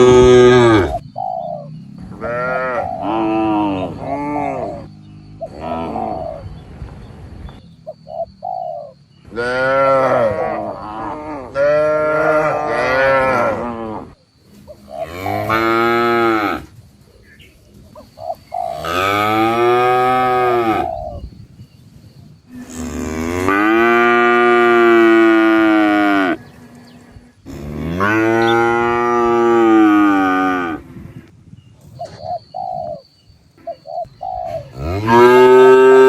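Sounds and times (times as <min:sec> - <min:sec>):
cattle mooing: 0:22.6 - 0:31.1.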